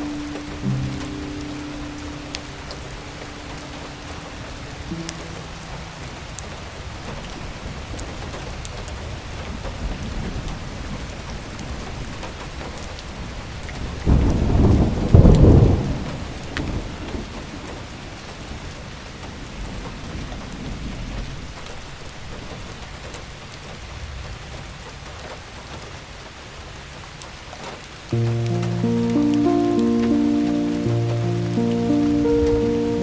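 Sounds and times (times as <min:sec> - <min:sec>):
steady rain: 0:00.0 - 0:33.0
thunder clap and rumble: 0:06.2 - 0:18.0.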